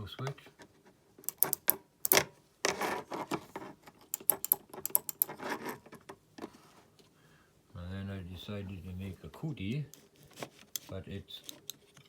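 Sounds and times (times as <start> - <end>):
morse key clicks: 1.2 - 2.3, 4.1 - 5.4, 10.7 - 12.0.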